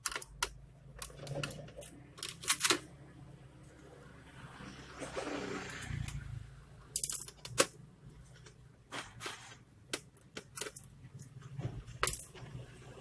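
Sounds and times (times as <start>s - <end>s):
laptop parts clicking and tapping: 0.0s - 2.8s.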